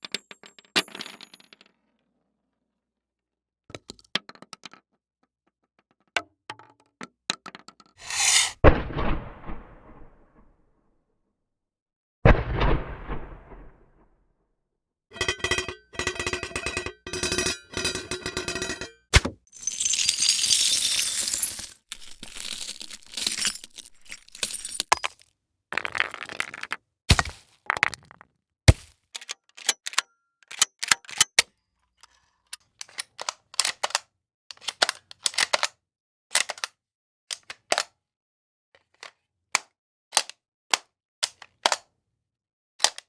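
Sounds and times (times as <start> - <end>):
harsh hissing scrape: 8.0 - 8.6
rattling jingling metal: 19.6 - 25.0.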